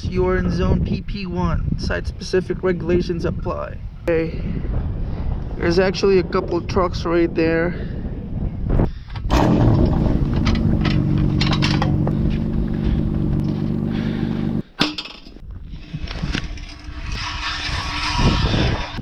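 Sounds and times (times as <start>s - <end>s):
vehicle engine idling: 9.3s - 14.7s
loose gear clinking: 9.8s - 13.6s
rustling and clicks: 9.9s - 12.6s.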